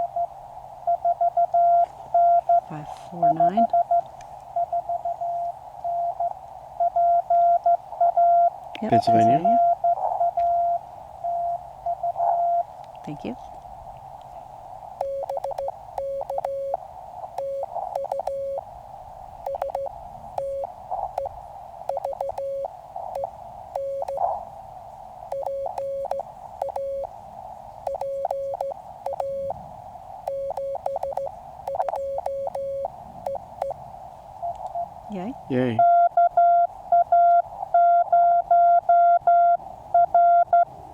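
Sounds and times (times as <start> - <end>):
receiver hiss: 0.0 - 40.9
morse code tone: 0.9 - 4.0, 4.6 - 12.7, 15.0 - 16.8, 17.4 - 18.6, 19.5 - 24.4, 25.3 - 27.1, 27.8 - 29.6, 30.3 - 33.8, 35.7 - 40.6.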